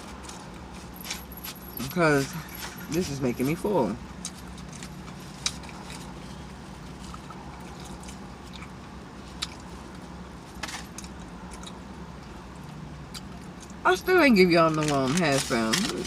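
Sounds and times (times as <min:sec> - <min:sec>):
close-up chewing: 0:04.0 - 0:13.8.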